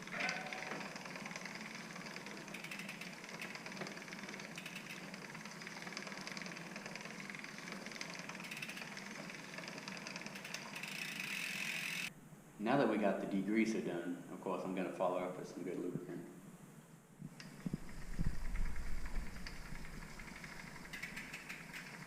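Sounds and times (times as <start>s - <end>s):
chain ticking: 0.0s - 12.1s, 17.8s - 22.0s
rag rubbing bicycle chain: 0.0s - 12.1s, 17.5s - 22.0s.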